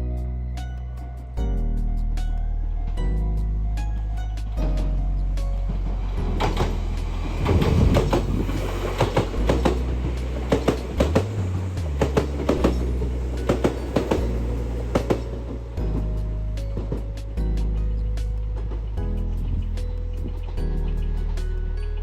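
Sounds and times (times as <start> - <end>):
train wheels clacking on rails: 5.6 - 21.5.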